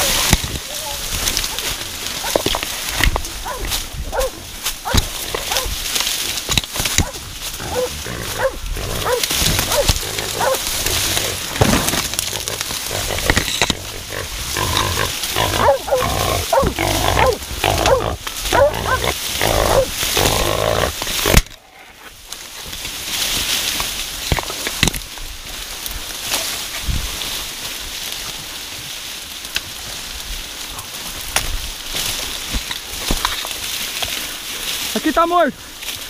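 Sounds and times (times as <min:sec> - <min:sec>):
wild boars squealing and grunting: 0:03.2 - 0:06.0, 0:06.8 - 0:22.2.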